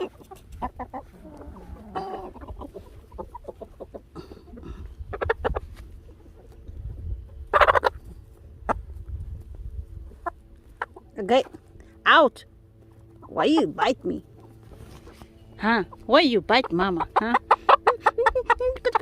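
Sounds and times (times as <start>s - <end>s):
chicken squawk: 0.0s - 3.9s, 7.5s - 8.1s
chickens clucking: 0.0s - 19.0s.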